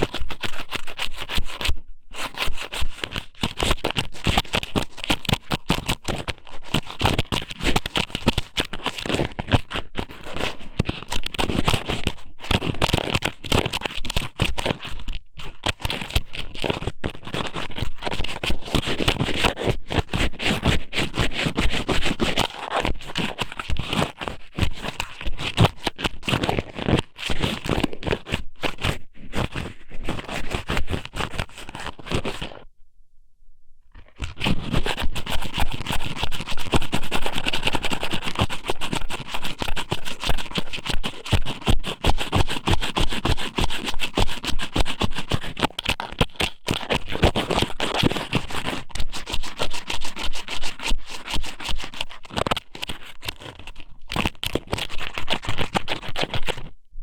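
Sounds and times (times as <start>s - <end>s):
scratching on microphone: 0.0s - 32.7s, 33.9s - 56.8s.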